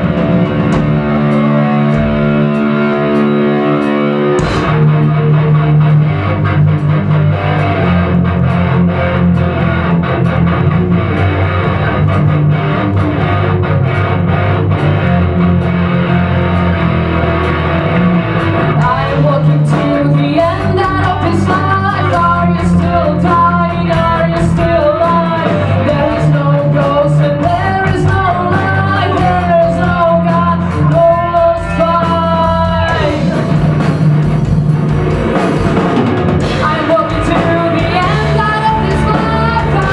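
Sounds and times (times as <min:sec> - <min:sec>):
rock band playing: 0:00.0 - 0:39.9
woman singing: 0:18.7 - 0:33.6, 0:36.6 - 0:39.9.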